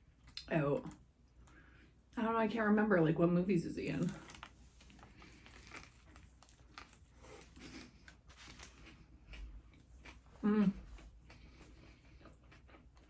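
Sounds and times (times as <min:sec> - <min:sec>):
faint chewing: 0:04.0 - 0:13.0.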